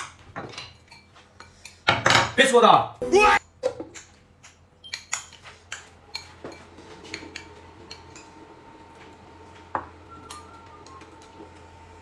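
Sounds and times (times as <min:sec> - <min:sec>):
utensils clinking against dishes: 0:03.9 - 0:08.4.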